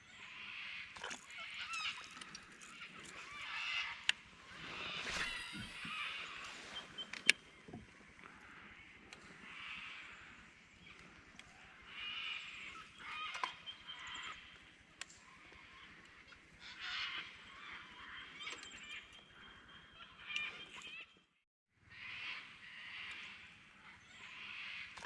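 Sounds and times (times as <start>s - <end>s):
faint birds calling: 0.0s - 25.0s.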